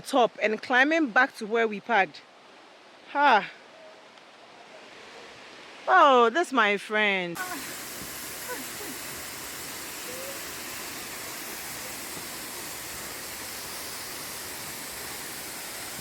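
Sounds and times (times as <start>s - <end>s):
waterfall roar: 7.4s - 16.0s.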